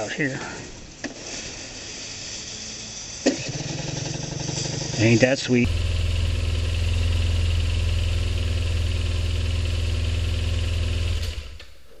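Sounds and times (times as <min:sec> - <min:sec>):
scooter engine idling: 0:03.4 - 0:11.8.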